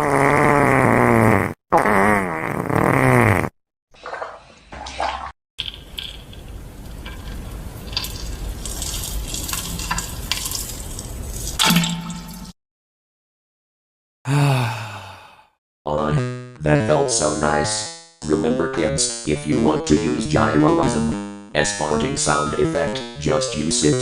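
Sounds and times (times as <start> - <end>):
loud wavering fart: 0.0 - 3.6, 16.1 - 16.6, 20.9 - 21.5
bathwater sloshing and splashing: 4.0 - 12.6.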